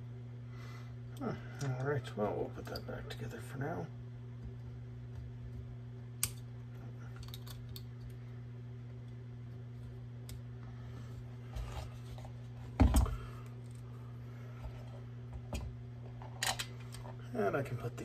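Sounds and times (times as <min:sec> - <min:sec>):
steady low hum: 0:00.0 - 0:18.0
metal pistol parts clicking: 0:07.2 - 0:07.9.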